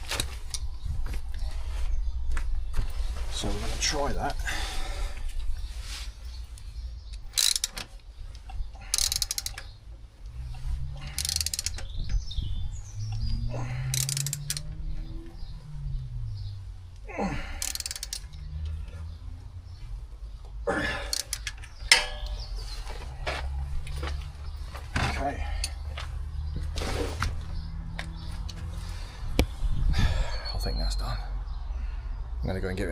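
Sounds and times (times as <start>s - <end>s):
ratchet wrench clicking: 7.1s - 12.2s, 13.1s - 15.2s, 17.0s - 18.8s, 21.1s - 22.5s.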